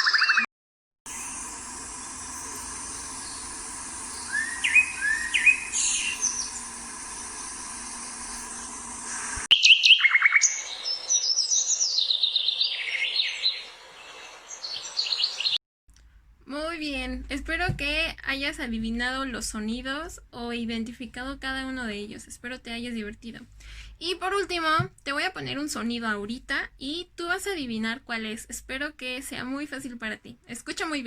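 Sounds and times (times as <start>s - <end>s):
steady outdoor hiss: 1.1s - 9.5s
bird chirps: 2.0s - 15.6s
songbird chorus with trills: 2.2s - 15.6s.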